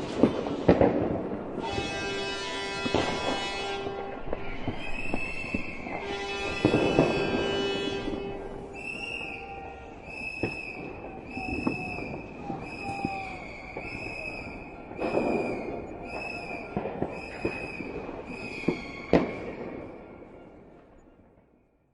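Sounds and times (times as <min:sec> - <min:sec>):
sharp bangs: 0:00.0 - 0:15.8
stadium crowd noise: 0:00.0 - 0:21.6
high-pitched horn blasts: 0:01.5 - 0:09.9.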